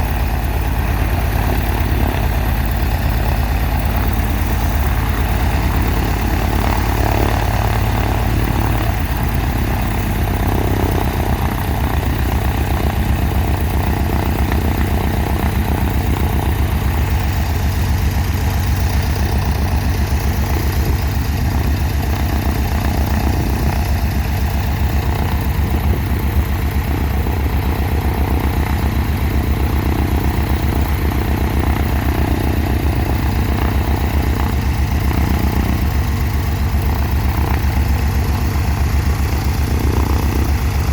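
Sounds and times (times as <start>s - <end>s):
piston aircraft engine running: 0.0s - 40.9s.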